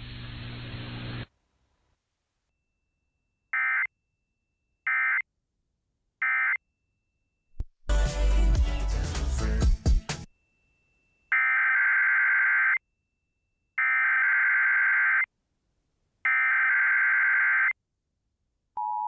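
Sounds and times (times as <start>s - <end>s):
broadcast hiss and hum: 0.0s - 2.1s
loud music: 7.9s - 10.3s.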